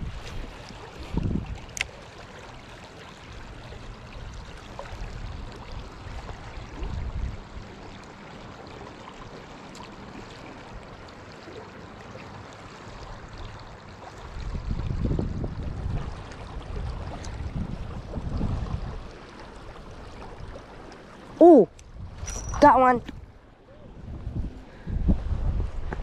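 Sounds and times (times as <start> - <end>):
wind gusts on microphone: 0.0 - 1.8, 4.9 - 7.7, 14.2 - 19.2, 21.8 - 26.0
shallow river water running: 0.0 - 26.0.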